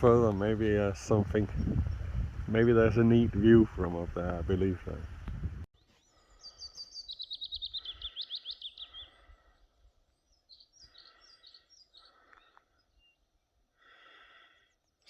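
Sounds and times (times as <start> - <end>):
small songbird singing: 5.8 - 13.6.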